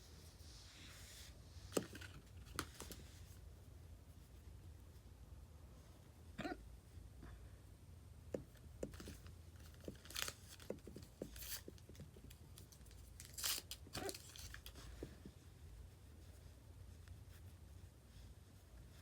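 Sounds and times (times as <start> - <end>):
nail polish strips crinkling: 9.0 - 14.8.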